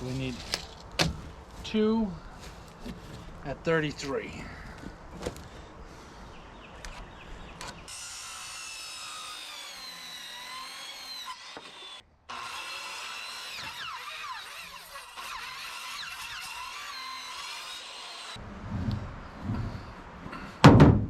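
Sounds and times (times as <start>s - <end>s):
electric saw cutting wood: 7.9s - 18.4s.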